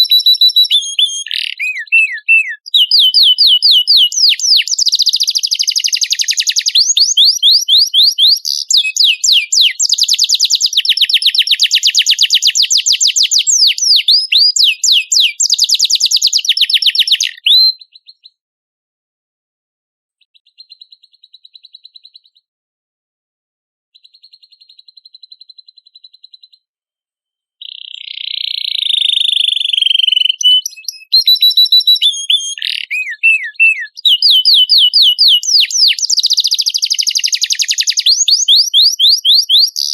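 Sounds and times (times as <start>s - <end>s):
harsh buzzy bird phrase: 0.0s - 4.6s, 32.0s - 34.4s
canary trilling: 0.0s - 18.3s, 27.6s - 39.9s.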